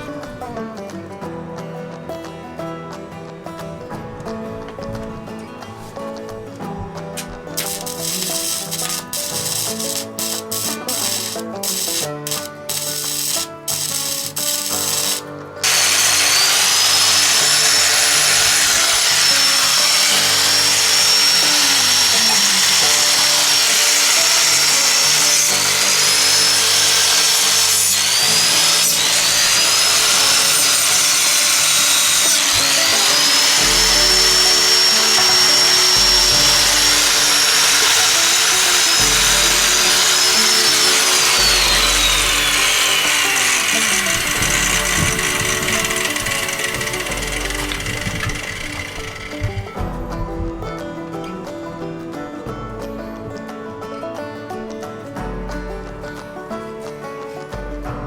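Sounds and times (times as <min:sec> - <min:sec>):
background music: 0:00.0 - 0:58.0
power tool whining: 0:06.6 - 0:50.0.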